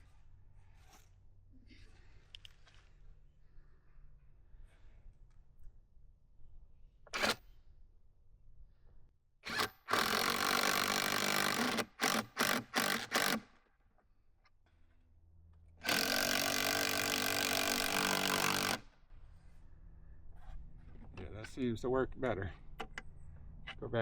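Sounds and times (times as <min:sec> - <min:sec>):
power drill driving screw into wood: 0:07.1 - 0:07.4, 0:09.4 - 0:13.5, 0:15.8 - 0:18.9.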